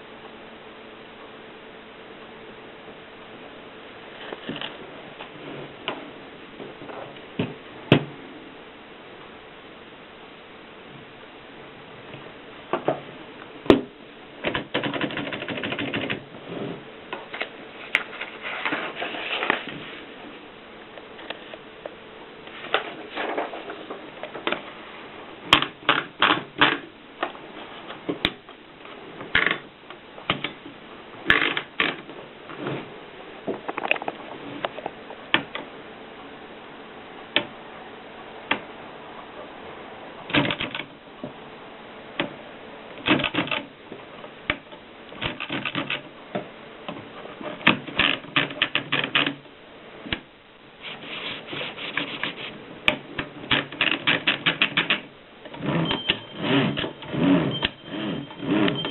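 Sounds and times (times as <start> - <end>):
typewriter keys clicking: 14.4 - 16.2, 40.3 - 40.9, 43.0 - 43.7, 45.2 - 46.0, 53.5 - 55.0.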